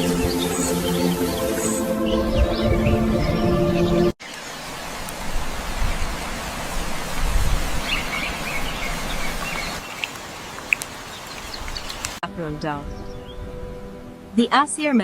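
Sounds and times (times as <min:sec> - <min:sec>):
steady rain falling: 0:04.2 - 0:12.2
bird chirps: 0:07.8 - 0:12.2
sharp ticks: 0:09.8 - 0:12.2.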